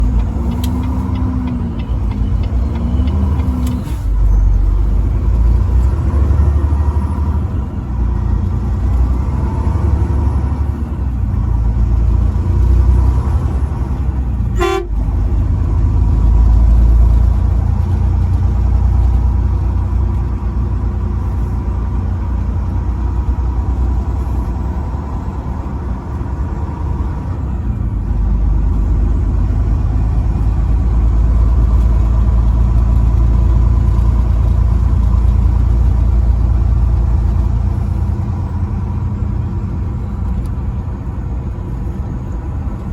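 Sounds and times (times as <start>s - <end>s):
truck engine and road rumble: 0.0s - 42.9s
truck horn blast: 14.5s - 15.2s.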